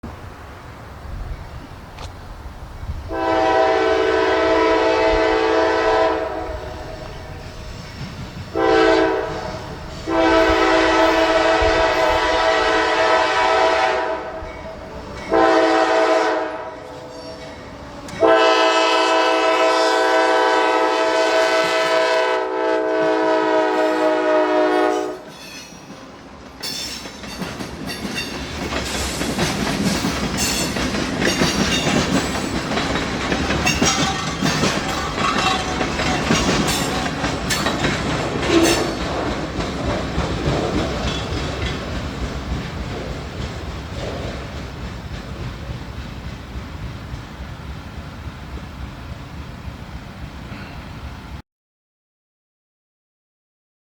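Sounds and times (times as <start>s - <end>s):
freight train rumble and clickety-clack: 1.0s - 51.4s
locomotive air horn blasts: 3.1s - 7.4s, 8.5s - 14.5s, 15.3s - 17.1s, 18.2s - 25.3s.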